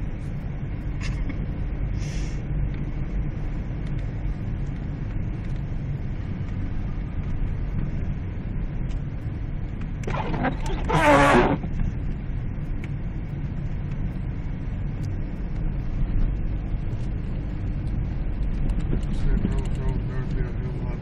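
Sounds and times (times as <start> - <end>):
short hiss: 2.0 - 2.4
car driving through snow: 10.0 - 11.8.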